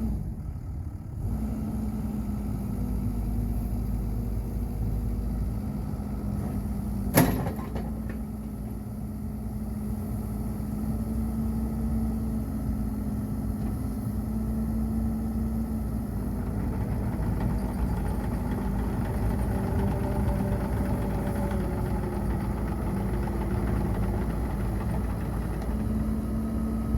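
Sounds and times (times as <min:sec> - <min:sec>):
excavator engine idling: 0:14.4 - 0:26.9.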